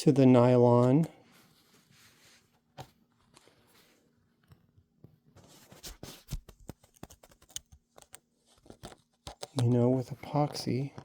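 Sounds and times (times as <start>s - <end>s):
small tools clicking and scraping: 6.8s - 9.8s.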